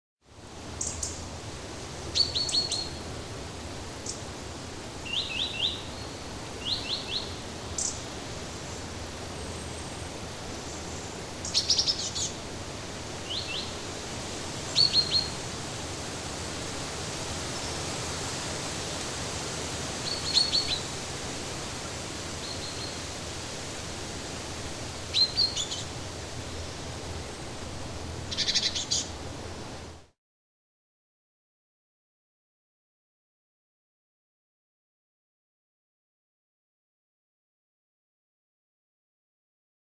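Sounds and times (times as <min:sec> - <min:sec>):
steady background hiss: 0:00.3 - 0:30.2
small birds chirping: 0:00.8 - 0:12.4, 0:25.1 - 0:26.0, 0:28.3 - 0:29.2.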